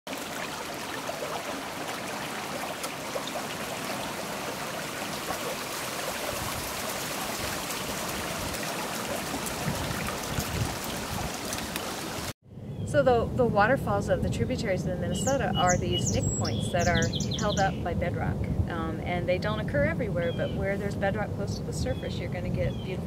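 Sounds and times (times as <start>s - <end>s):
waterfall rushing: 0.1s - 12.3s.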